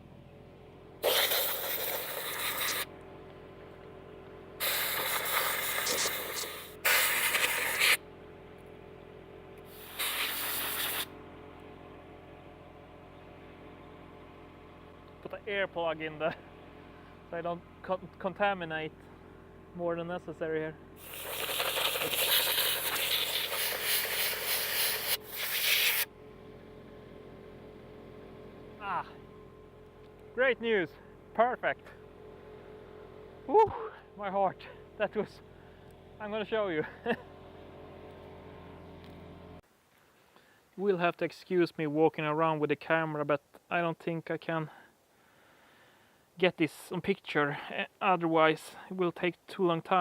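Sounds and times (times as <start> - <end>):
compressed air blow gun hissing: 1.0 - 2.9, 4.6 - 8.0, 9.7 - 11.1, 21.0 - 26.1.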